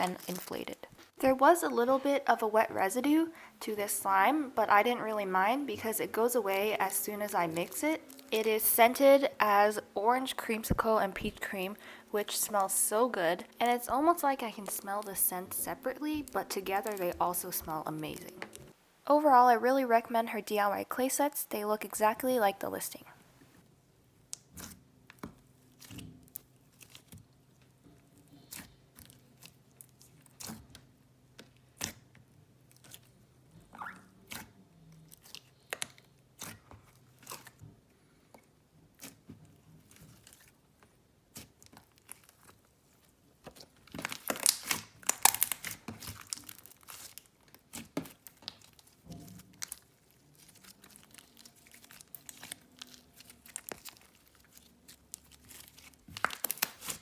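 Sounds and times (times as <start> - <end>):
slime squished with small pops: 43.4 - 57.0.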